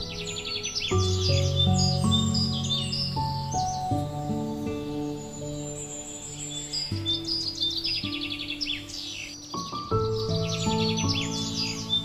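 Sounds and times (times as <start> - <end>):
high bird chirps and whistles: 0.0 - 12.0
instrumental music with held notes: 0.0 - 12.0.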